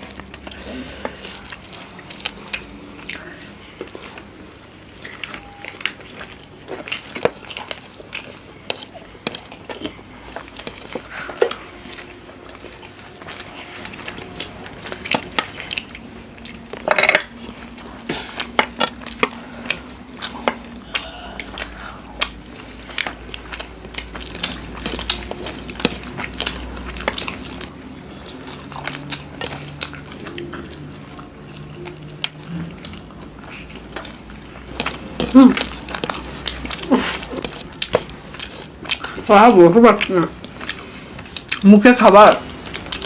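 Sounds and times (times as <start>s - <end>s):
dishes and cutlery clinking: 16.7s - 17.4s.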